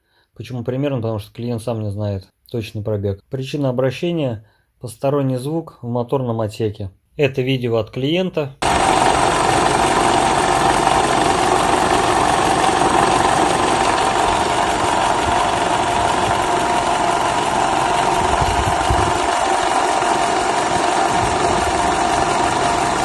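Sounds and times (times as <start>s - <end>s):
car engine idling with whine: 8.6s - 23.0s.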